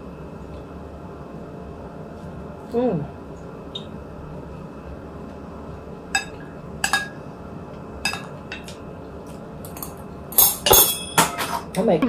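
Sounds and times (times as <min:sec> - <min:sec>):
dishes clinking: 0:06.2 - 0:07.2, 0:08.0 - 0:08.8, 0:09.7 - 0:11.7.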